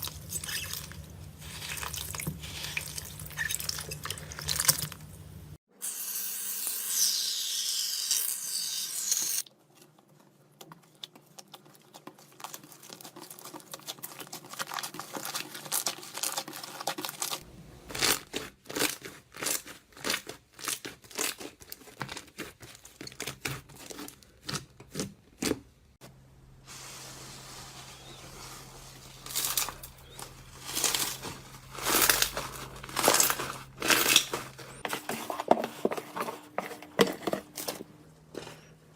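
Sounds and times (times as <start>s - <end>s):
slime crinkling and popping: 10.6s - 25.6s, 29.3s - 34.8s.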